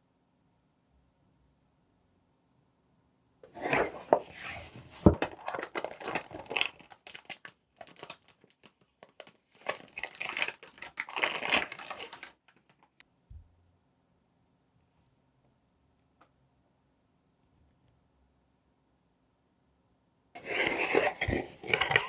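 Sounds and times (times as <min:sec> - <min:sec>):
packaging crinkling: 0:03.5 - 0:12.8, 0:20.4 - 0:22.0.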